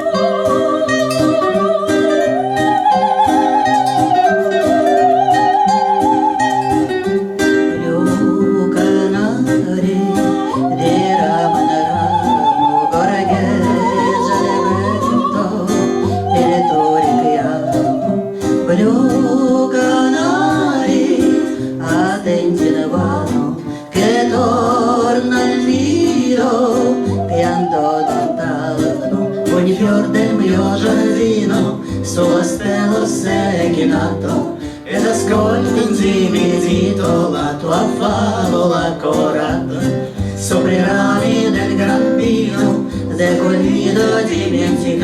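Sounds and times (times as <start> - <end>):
plucked guitar accompaniment: 0.0 - 45.0.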